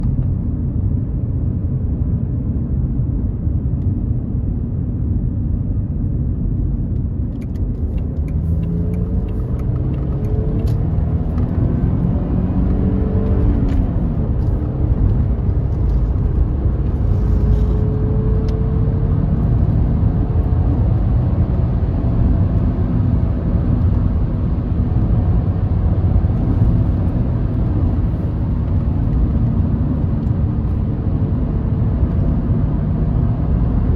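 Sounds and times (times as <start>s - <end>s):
car engine running: 7.4s - 32.9s.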